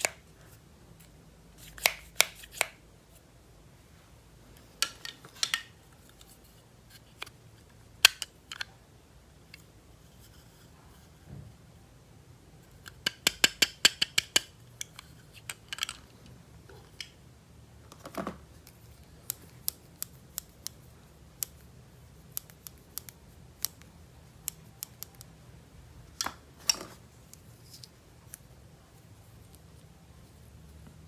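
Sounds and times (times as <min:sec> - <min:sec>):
plastic toy parts clicking: 0:04.8 - 0:07.4, 0:08.0 - 0:08.7, 0:12.7 - 0:16.1.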